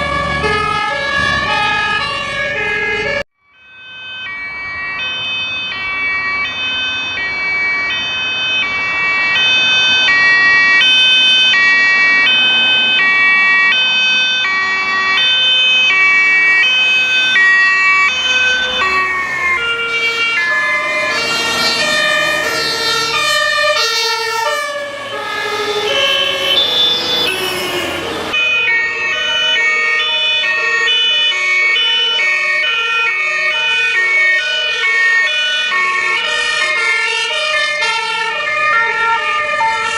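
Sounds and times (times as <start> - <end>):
fire truck two-tone siren: 0.0 - 39.9
siren with sliding pitch: 0.0 - 39.9.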